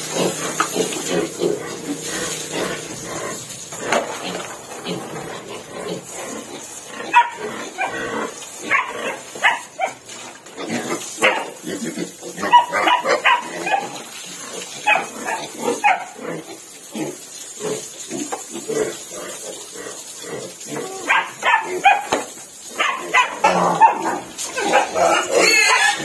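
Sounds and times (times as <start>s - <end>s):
pig: 0.0s - 26.0s
dog barking: 7.1s - 8.0s, 8.7s - 10.0s, 11.2s - 11.5s, 12.5s - 13.9s, 14.8s - 16.2s, 21.0s - 22.2s, 22.8s - 25.0s.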